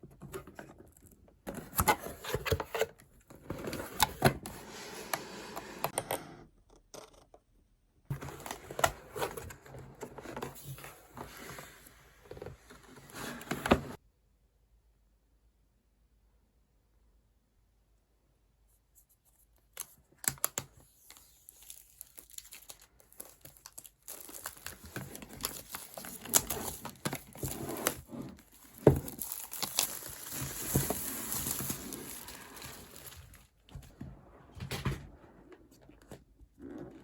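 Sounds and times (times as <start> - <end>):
packaging crinkling and tearing: 20.3 - 33.5.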